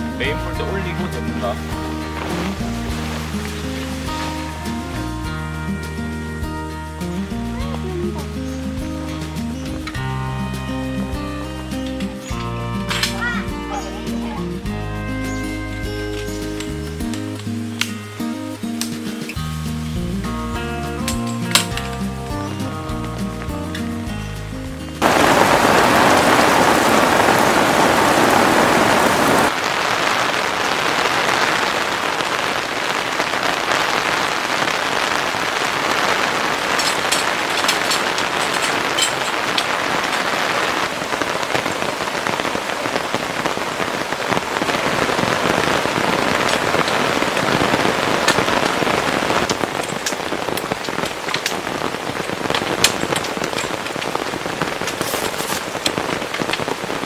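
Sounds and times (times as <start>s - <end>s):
heavy rain pouring: 0.0s - 57.0s
raindrop ticks: 21.0s - 57.0s.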